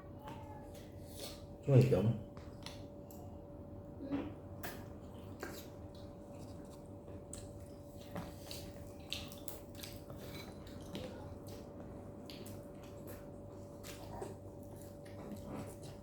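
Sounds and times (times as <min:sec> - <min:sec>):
chewing noises: 0:04.6 - 0:16.0.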